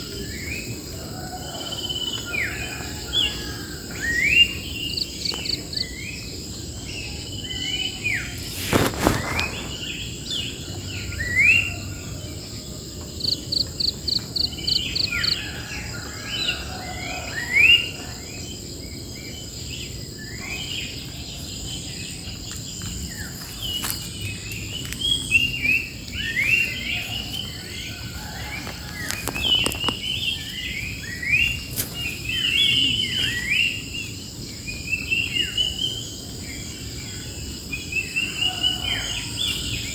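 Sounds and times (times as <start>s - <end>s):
insects droning: 0.0s - 39.9s
songbirds chirping: 0.0s - 39.9s
burst of noise: 8.3s - 10.4s.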